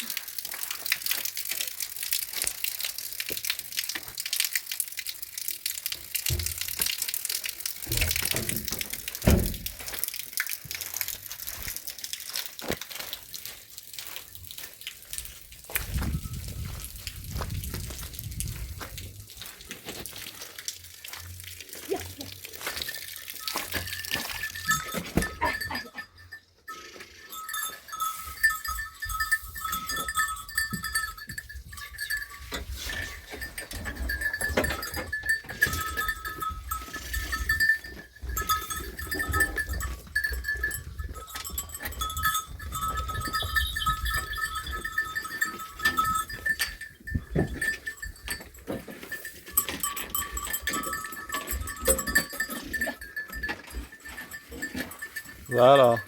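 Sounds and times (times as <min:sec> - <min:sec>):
wind rumbling on microphone: 0:15.7 - 0:19.4, 0:42.0 - 0:45.1
bells ringing: 0:22.6 - 0:56.0.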